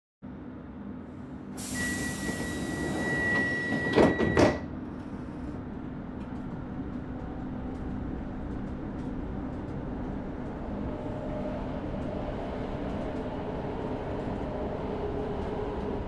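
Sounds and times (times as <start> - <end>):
train low hum: 0.2 - 16.0
air hiss of sliding doors: 1.6 - 3.7.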